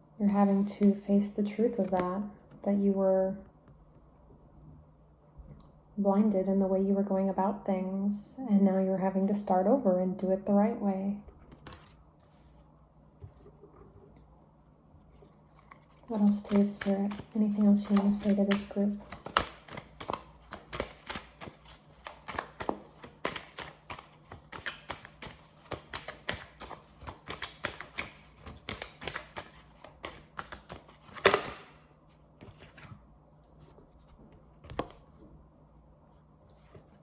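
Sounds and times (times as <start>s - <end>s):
cards slap: 16.5s - 31.8s.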